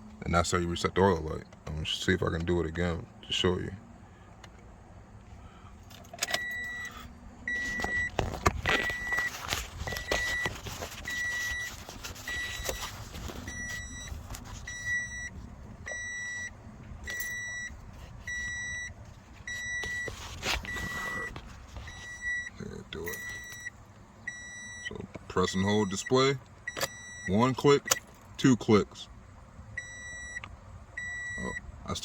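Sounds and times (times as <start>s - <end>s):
key turning in ignition: 5.8s - 15.2s, 17.0s - 18.8s, 23.0s - 23.7s, 26.6s - 27.2s, 27.8s - 28.4s
car warning chime beeping: 6.1s - 28.8s, 29.8s - 32.0s.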